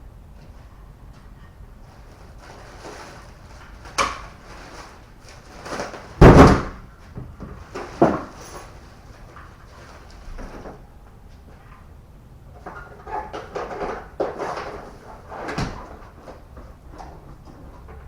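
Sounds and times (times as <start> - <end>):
heavy car door thump: 6.2 - 6.9.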